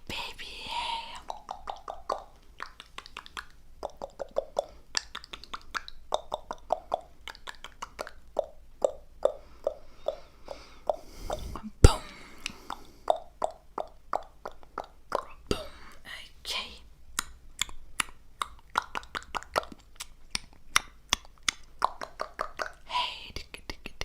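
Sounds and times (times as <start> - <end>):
breathy hiss: 0.0 - 1.3, 9.3 - 13.1
wet mouth pops: 1.2 - 15.6, 17.2 - 22.8.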